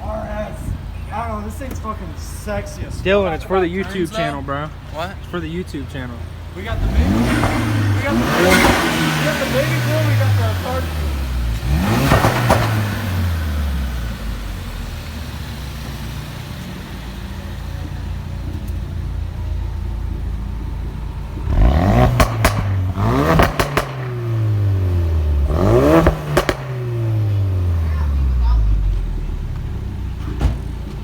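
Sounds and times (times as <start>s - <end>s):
car engine revving: 5.3s - 31.0s
exhaust crackles and pops: 6.6s - 13.2s, 17.6s - 31.0s.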